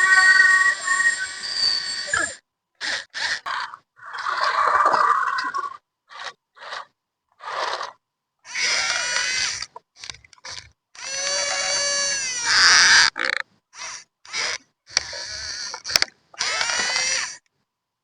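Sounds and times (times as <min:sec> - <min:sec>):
small electric motors whining and grinding: 0:00.0 - 0:03.5, 0:08.5 - 0:17.5.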